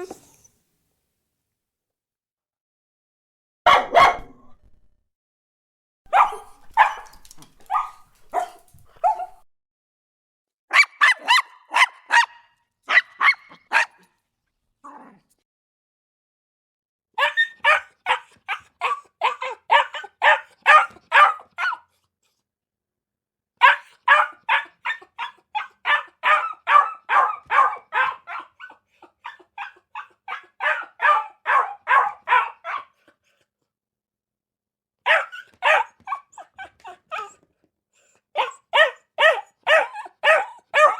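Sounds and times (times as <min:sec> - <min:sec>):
dog barking: 0:03.7 - 0:04.5, 0:06.1 - 0:09.4, 0:10.7 - 0:14.1, 0:17.2 - 0:22.0, 0:23.6 - 0:33.1, 0:35.0 - 0:37.4, 0:38.4 - 0:40.9.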